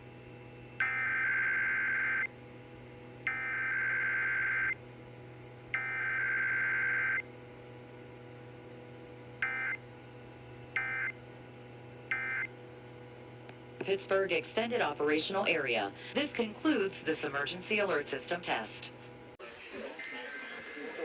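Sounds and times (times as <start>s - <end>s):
steady low hum: 0.0s - 19.4s
two-tone digital data buzzes: 0.8s - 2.3s, 5.8s - 7.2s, 9.4s - 9.8s, 10.8s - 11.1s, 12.1s - 12.5s.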